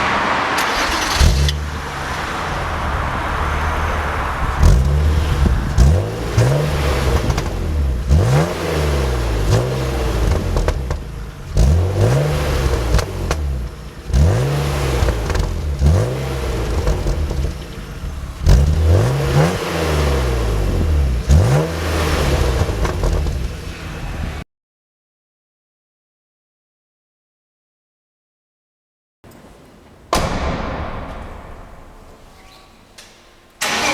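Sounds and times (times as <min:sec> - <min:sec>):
car engine revving: 0:00.0 - 0:24.4, 0:33.0 - 0:33.9.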